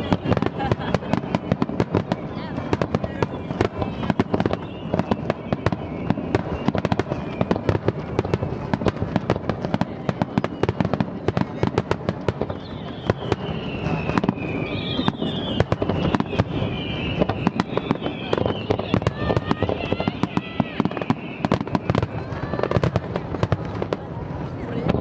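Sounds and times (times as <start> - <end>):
fireworks bangs: 0.0 - 25.0
fireworks popping and crackling: 0.0 - 25.0
high wavering whistling: 12.5 - 22.1.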